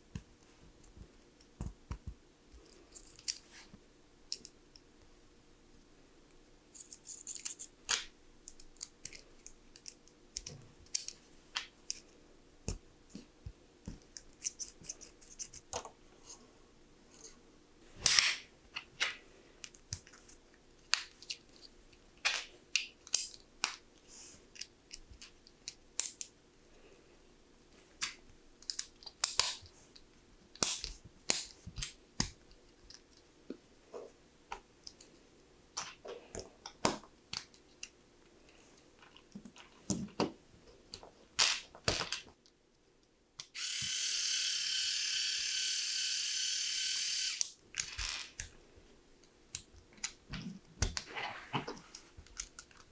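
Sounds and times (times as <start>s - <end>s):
plastic pieces clicking together: 28.0s - 29.7s, 46.7s - 48.6s.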